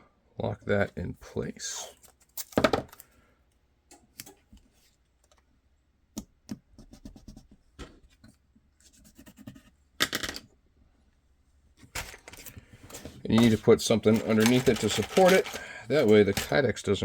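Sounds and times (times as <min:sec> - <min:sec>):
small parts tapping and clicking: 0:13.4 - 0:16.6.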